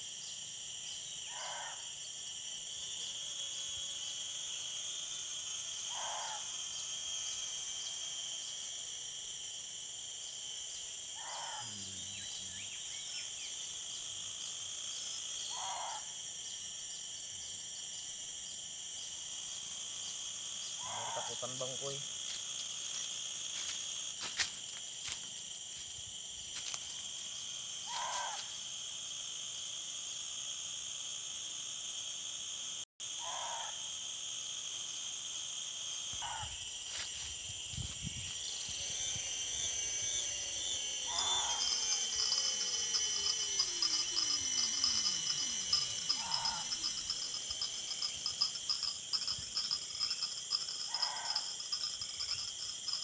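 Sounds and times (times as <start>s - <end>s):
night insects chorus: 0.0s - 53.0s
night animal's short call: 5.9s - 6.4s, 11.2s - 12.0s, 15.5s - 16.1s, 20.8s - 21.3s, 27.9s - 28.5s, 33.2s - 33.8s.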